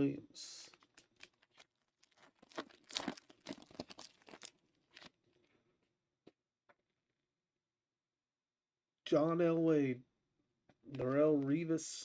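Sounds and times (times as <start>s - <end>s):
foil wrapper tearing and crinkling: 0.7s - 5.2s.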